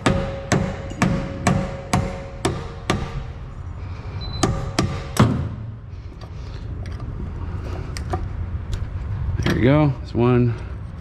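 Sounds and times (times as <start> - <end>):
hammer striking metal wrench: 0.0 - 3.2.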